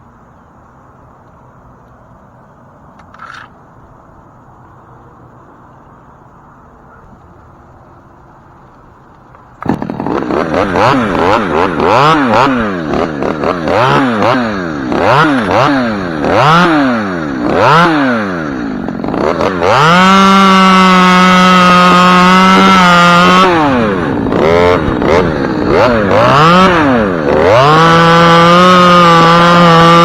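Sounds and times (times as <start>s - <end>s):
chainsaw revving: 9.5s - 30.0s.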